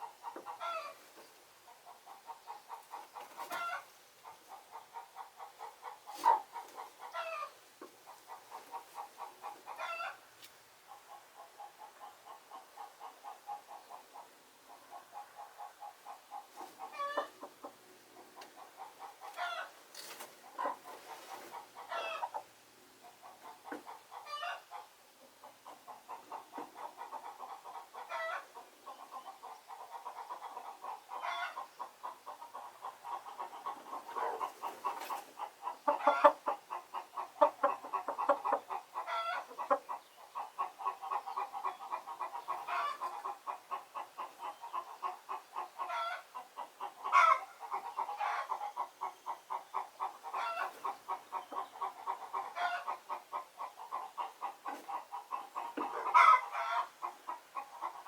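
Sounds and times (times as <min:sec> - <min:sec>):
chickens clucking: 0:00.0 - 0:58.0
loud chicken calls: 0:53.9 - 0:58.0.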